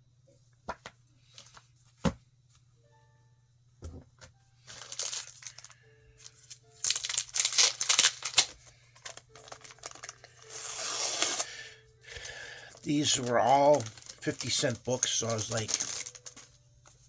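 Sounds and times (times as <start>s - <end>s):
plastic and paper rustling: 4.6s - 11.5s, 12.1s - 17.0s.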